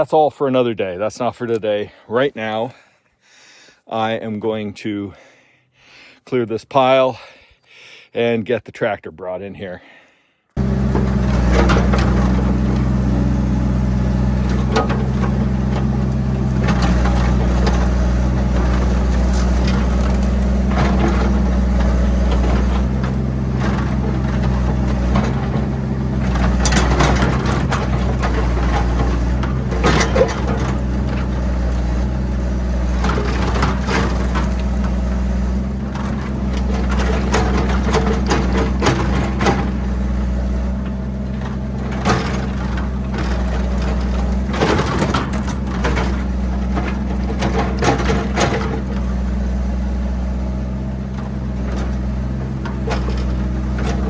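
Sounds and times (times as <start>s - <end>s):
excavator diesel engine running: 10.6s - 54.0s
debris cracking and scraping: 14.1s - 40.1s, 40.8s - 49.0s.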